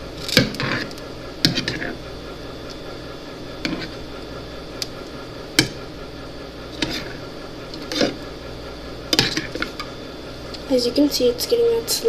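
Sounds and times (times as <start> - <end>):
slime being stirred: 0.1 - 2.0, 3.6 - 4.2, 6.7 - 8.4, 9.1 - 9.9.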